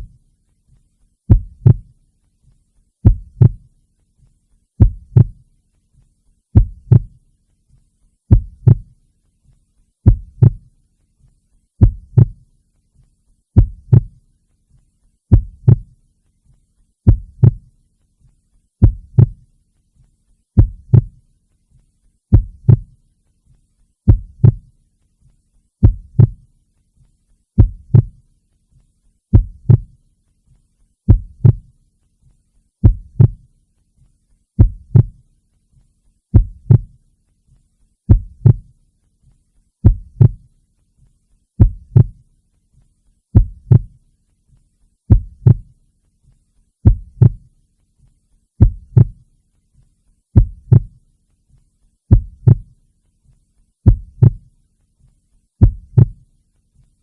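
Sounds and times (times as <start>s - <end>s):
heartbeat double thump: 1.3s - 1.9s, 3.0s - 3.7s, 4.8s - 5.4s, 6.6s - 7.2s, 8.3s - 8.9s, 10.0s - 10.7s, 11.8s - 12.4s, 13.6s - 14.2s, 15.3s - 15.9s, 17.1s - 17.7s, 18.8s - 19.4s, 20.6s - 21.2s, 22.3s - 22.9s, 24.1s - 24.7s, 25.8s - 26.4s, 27.6s - 28.2s, 29.3s - 29.9s, 31.1s - 31.7s, 32.8s - 33.4s, 34.6s - 35.2s, 36.3s - 37.0s, 38.1s - 38.7s, 39.8s - 40.4s, 41.6s - 42.2s, 43.4s - 44.0s, 45.1s - 45.7s, 46.8s - 47.4s, 48.6s - 49.2s, 50.4s - 51.0s, 52.1s - 52.7s, 53.9s - 54.5s, 55.6s - 56.2s.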